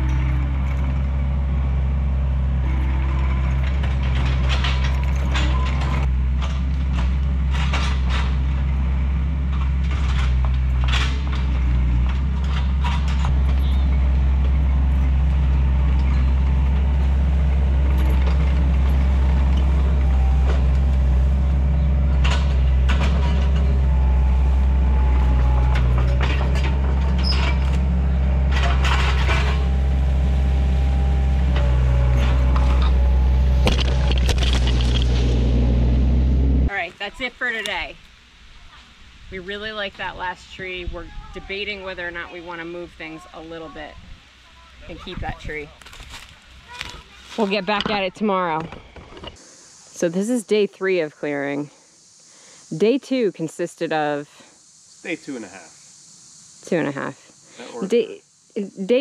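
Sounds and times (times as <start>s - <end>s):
diesel engine running: 0.0s - 37.8s
machine clanks and knocks: 2.6s - 30.0s.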